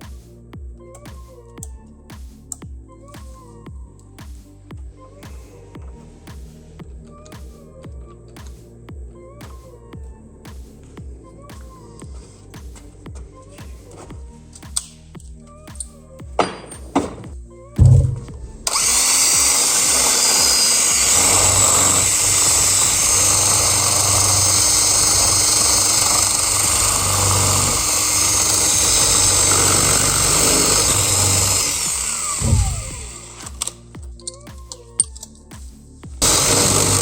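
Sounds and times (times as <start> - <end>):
knocks: 16.4 - 18.4
thump: 16.4 - 18.5, 32.4 - 33.0
electric drill boring into metal: 17.8 - 33.8, 36.2 - 37.0.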